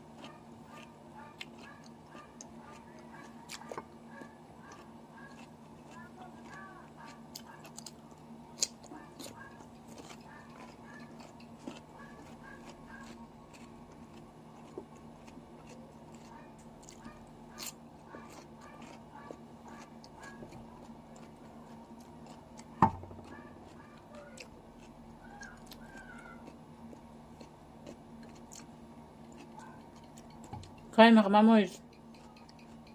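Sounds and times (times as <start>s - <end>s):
person chewing cucumber: 0.0s - 31.0s, 31.7s - 32.9s.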